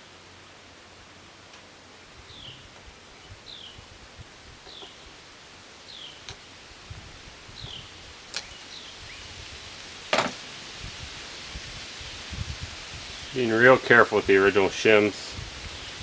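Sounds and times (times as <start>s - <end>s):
bird chirping: 2.3s - 3.8s, 4.7s - 5.1s, 5.8s - 6.3s, 7.6s - 9.3s.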